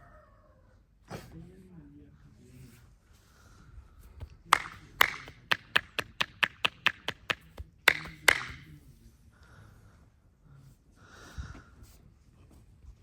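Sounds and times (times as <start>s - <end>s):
hands slapping in massage: 4.2s - 8.7s.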